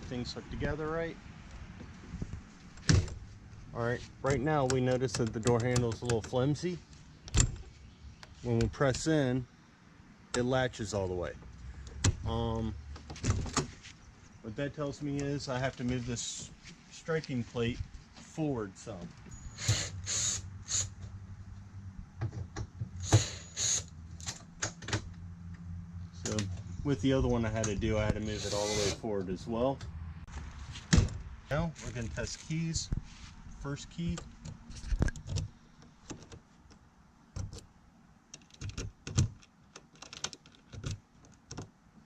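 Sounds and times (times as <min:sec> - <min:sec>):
key turning in lock: 0:38.4 - 0:41.6.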